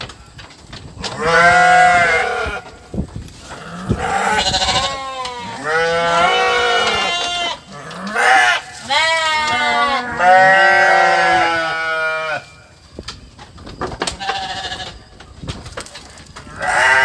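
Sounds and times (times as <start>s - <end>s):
goats bleating: 1.0s - 12.7s, 14.0s - 15.0s, 16.4s - 17.0s.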